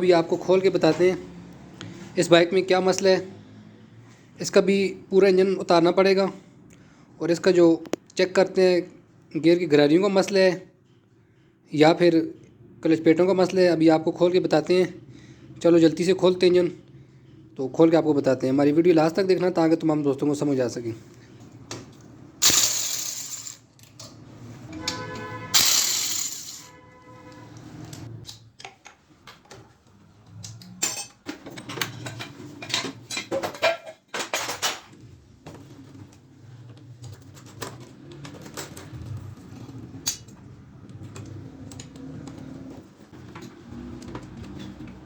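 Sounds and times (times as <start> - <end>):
loud metallic clangs: 22.4 - 23.6, 24.8 - 27.2
metal tools clinking: 22.4 - 27.4, 30.6 - 34.8.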